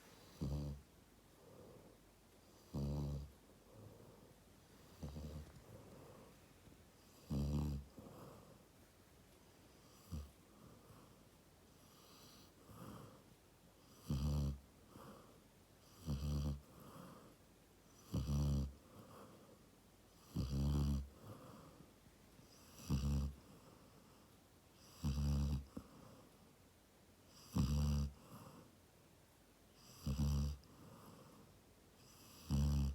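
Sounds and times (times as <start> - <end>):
loud low snores: 0.2 - 0.8, 2.6 - 4.0, 4.9 - 6.2, 7.1 - 8.4, 13.9 - 15.2, 15.9 - 17.2, 18.0 - 19.3, 20.2 - 21.6, 22.6 - 23.5, 24.8 - 25.9, 27.4 - 28.6, 29.8 - 31.3, 32.0 - 32.9.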